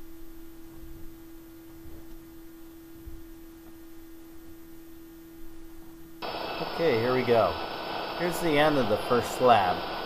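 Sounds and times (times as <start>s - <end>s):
steady pure tone: 0.0s - 10.0s.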